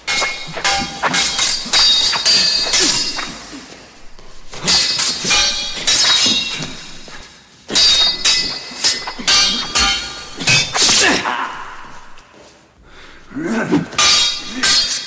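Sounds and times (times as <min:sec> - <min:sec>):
metal blades clashing: 0:00.0 - 0:12.2, 0:13.0 - 0:15.0.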